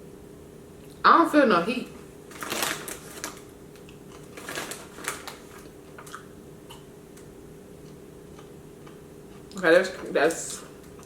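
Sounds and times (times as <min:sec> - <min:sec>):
chewing crunchy popcorn: 0:02.3 - 0:10.0.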